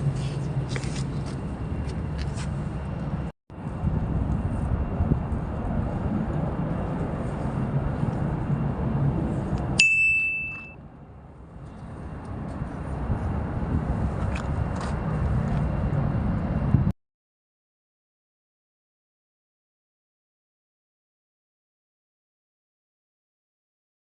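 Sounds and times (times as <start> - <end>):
steady low rumble: 0.0 - 17.0
sharp bell-like ding: 9.8 - 10.8.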